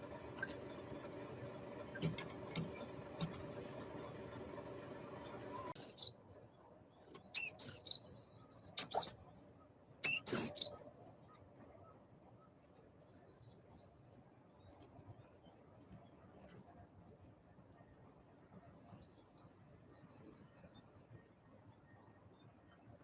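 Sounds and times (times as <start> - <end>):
small bird chirping: 5.0 - 6.2, 7.1 - 9.2, 10.0 - 10.8.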